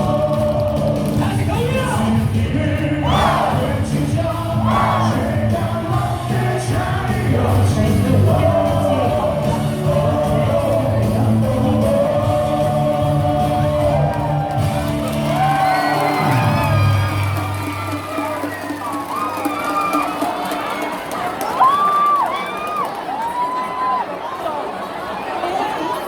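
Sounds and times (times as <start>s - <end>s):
crowd singing in unison: 0.0s - 17.0s
loud music from speakers: 0.0s - 18.9s
crowd shouts and whoops: 3.0s - 3.7s, 4.6s - 5.2s, 13.8s - 24.4s.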